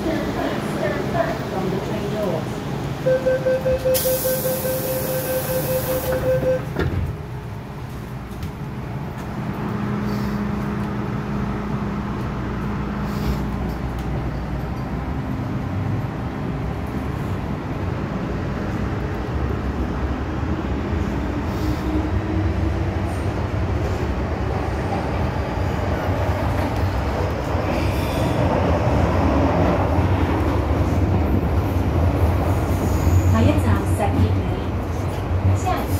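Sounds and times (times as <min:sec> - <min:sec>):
short steady tone: 0:03.1 - 0:06.6
train wheels rumbling on track: 0:05.8 - 0:35.9.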